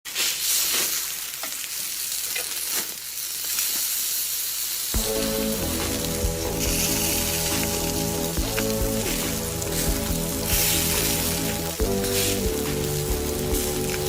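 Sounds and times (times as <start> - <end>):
food sizzling on a grill: 0.1 - 14.0
music with sustained tones: 5.0 - 14.0.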